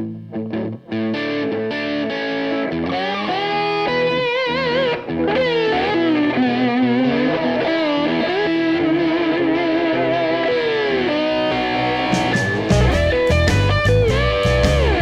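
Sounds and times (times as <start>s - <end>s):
distorted electric guitar lead: 0.0s - 15.0s
drums: 11.6s - 15.0s.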